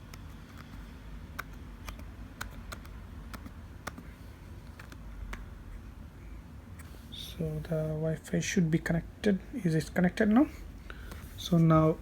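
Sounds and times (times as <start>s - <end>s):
laptop keyboard clicks: 0.0s - 4.1s.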